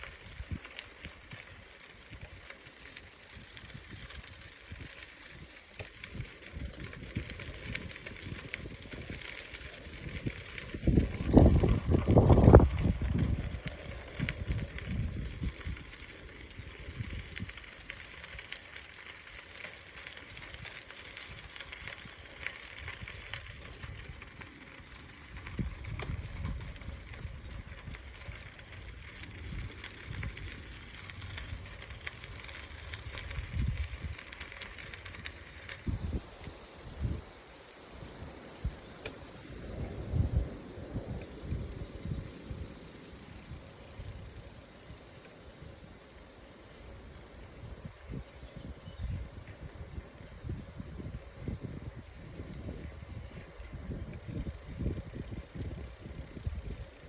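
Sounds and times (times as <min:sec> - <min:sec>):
wind buffeting microphone: 0:03.4 - 0:17.9, 0:22.8 - 0:57.0
faint steady hiss: 0:28.6 - 0:57.0.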